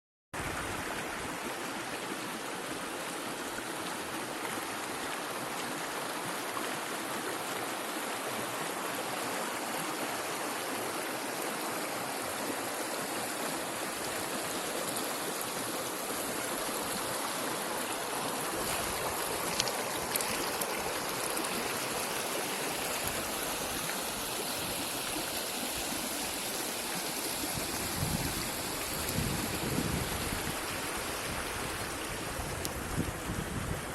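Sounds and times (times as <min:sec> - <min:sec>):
river and waterfall rushing: 0:00.4 - 0:33.9.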